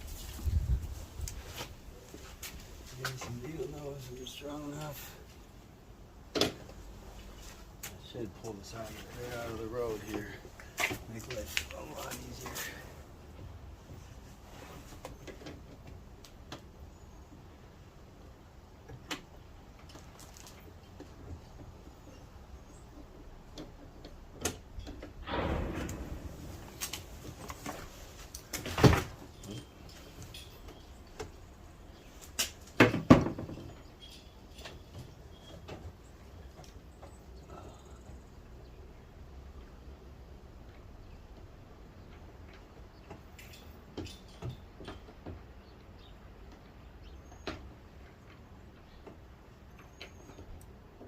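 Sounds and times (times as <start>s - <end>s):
scraping rustle: 6.7s - 13.1s, 13.8s - 15.8s.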